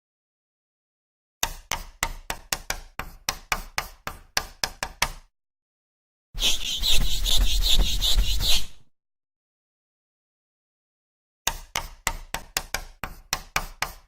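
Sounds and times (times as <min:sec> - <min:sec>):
chalk tapping on blackboard: 0:01.4 - 0:05.3, 0:06.4 - 0:08.8, 0:11.5 - 0:14.0
eraser rubbing on chalkboard: 0:06.4 - 0:08.9, 0:13.0 - 0:14.0.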